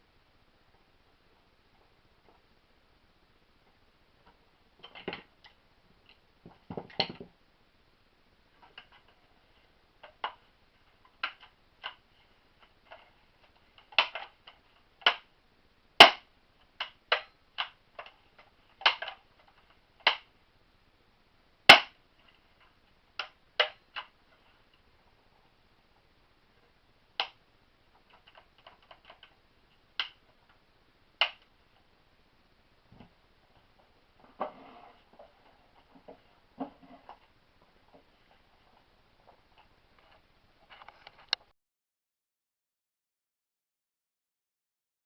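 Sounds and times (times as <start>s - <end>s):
sharp metal snaps: 12.6s - 15.3s, 16.0s - 18.2s, 18.8s - 20.3s, 21.7s - 22.0s, 27.2s - 27.4s, 31.2s - 31.5s.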